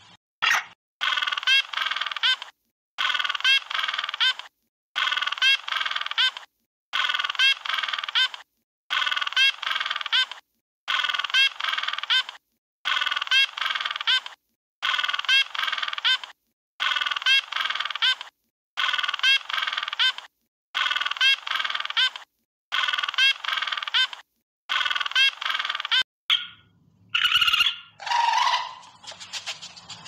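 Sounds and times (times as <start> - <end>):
different animal sound: 0.4 - 30.0
recorded animal call: 25.0 - 30.0.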